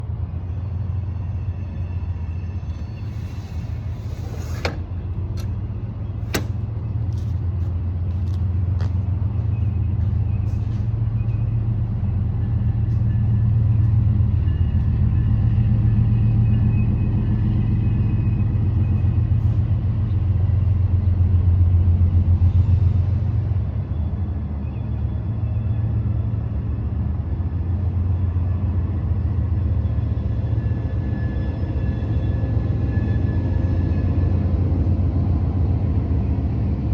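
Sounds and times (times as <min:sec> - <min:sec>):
low mechanical rumble: 0:02.6 - 0:12.1.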